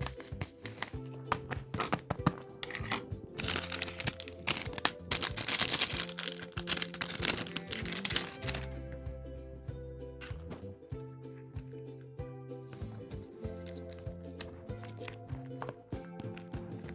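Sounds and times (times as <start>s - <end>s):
paper and tape crinkling: 0.0s - 8.8s
background music: 0.0s - 16.9s.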